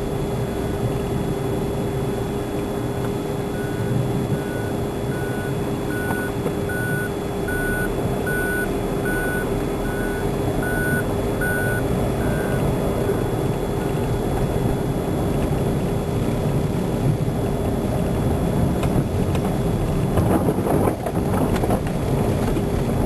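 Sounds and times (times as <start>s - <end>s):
vehicle running noise: 0.0s - 23.0s
reversing alarm beeping: 3.5s - 12.7s.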